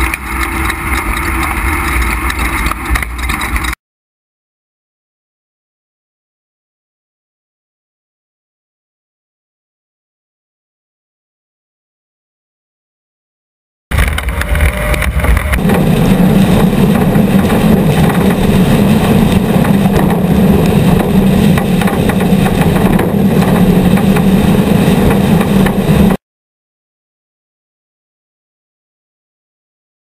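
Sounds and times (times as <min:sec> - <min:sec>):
mechanical driving noise: 0:00.0 - 0:03.8, 0:13.9 - 0:26.2
race vehicle engine running: 0:00.0 - 0:03.8, 0:13.9 - 0:26.2.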